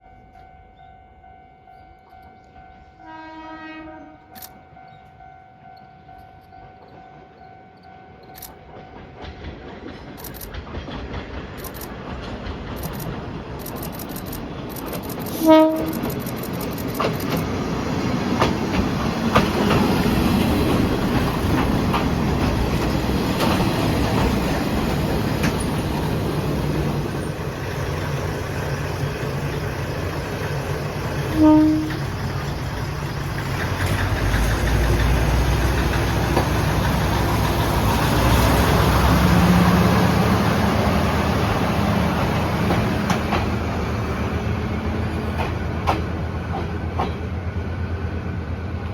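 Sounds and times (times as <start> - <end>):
diesel railcar engine: 0.0 - 48.9
train wheels on rail joints: 0.0 - 48.9
train horn blast: 3.0 - 4.4, 15.3 - 16.1, 31.3 - 32.1.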